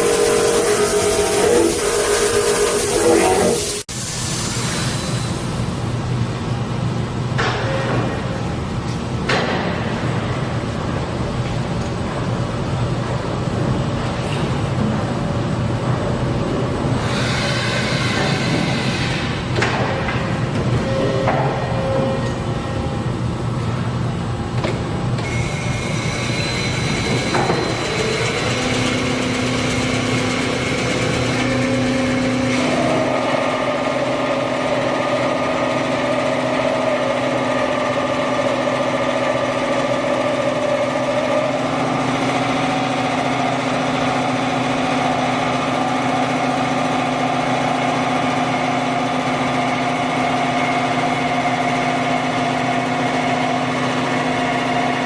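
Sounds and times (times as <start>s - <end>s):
drilling machine humming and whining: 0.0s - 3.9s, 16.9s - 23.6s, 25.1s - 55.0s.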